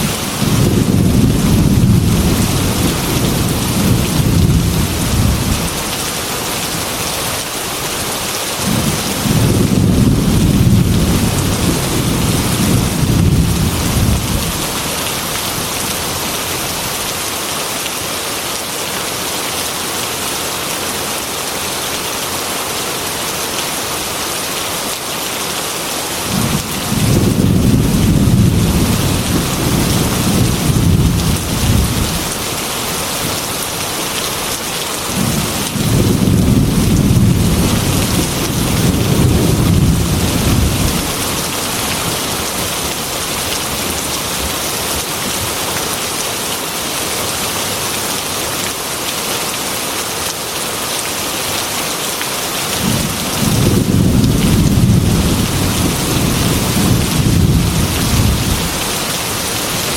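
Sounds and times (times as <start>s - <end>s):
rain on a glass window: 0.0s - 22.5s, 23.1s - 59.9s
low thunder rolling: 0.4s - 5.8s, 8.6s - 14.8s, 26.3s - 32.3s, 35.1s - 41.3s, 52.8s - 58.8s.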